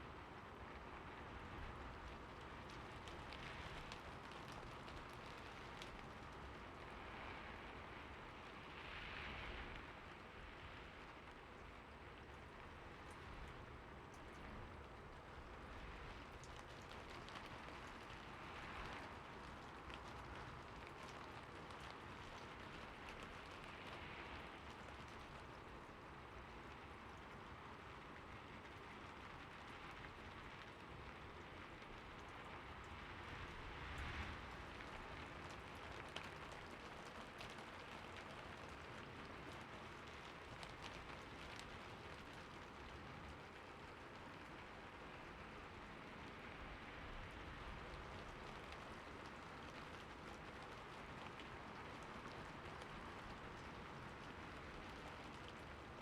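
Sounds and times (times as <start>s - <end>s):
heavy rain falling: 0.2s - 11.3s, 13.8s - 56.0s
faint drip ticks: 11.6s - 56.0s.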